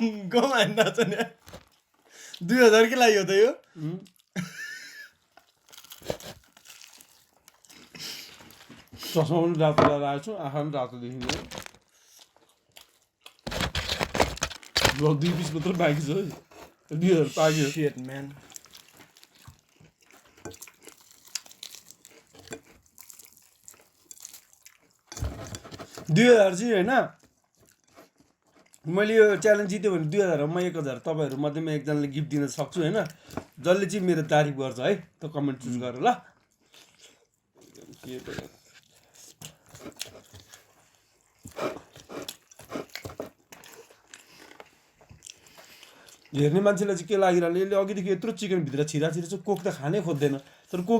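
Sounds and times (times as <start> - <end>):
chewing crunches: 5.2 - 8.8, 11.2 - 15.9, 18.0 - 25.2, 27.2 - 28.9, 36.3 - 46.4
light crinkling: 11.2 - 19.7.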